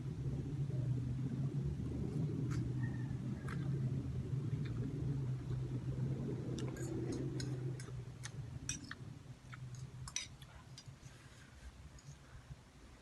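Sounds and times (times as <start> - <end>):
low hum: 0.0 - 13.0
chewing clicks and smacks: 3.4 - 3.7, 6.6 - 11.0.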